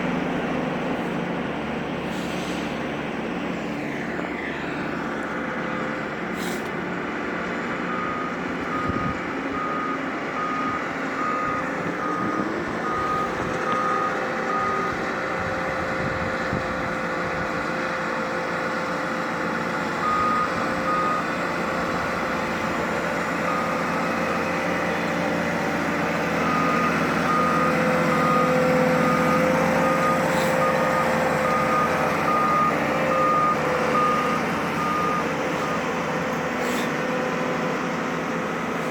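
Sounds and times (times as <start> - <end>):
diesel engine running: 0.0 - 38.9
backup alarm beeping: 7.9 - 15.5, 26.4 - 35.9.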